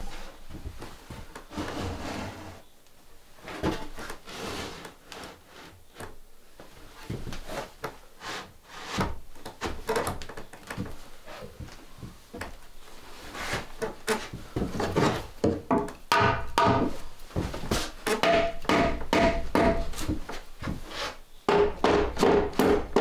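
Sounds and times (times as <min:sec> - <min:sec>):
short scrapes: 0:01.5 - 0:02.6.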